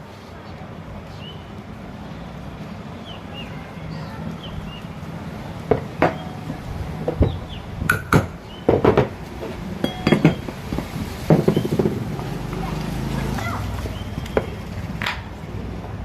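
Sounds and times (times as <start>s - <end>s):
metal tools clinking: 9.8s - 10.7s.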